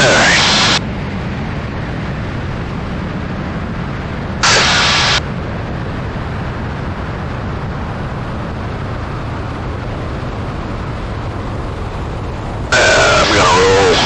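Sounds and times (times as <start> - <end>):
radio static burst: 0.0 - 0.8, 4.4 - 5.2, 12.7 - 14.0
airplane engines droning: 0.0 - 14.0.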